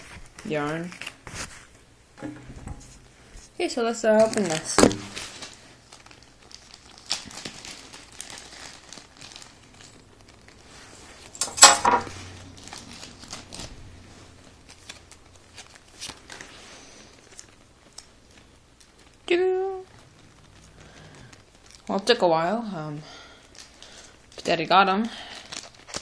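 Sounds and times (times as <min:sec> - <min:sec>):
packaging crinkling and rustling: 0:00.0 - 0:22.5, 0:23.1 - 0:26.0
packaging ripping: 0:04.2 - 0:19.3, 0:19.9 - 0:22.0, 0:23.4 - 0:24.5, 0:25.2 - 0:26.0.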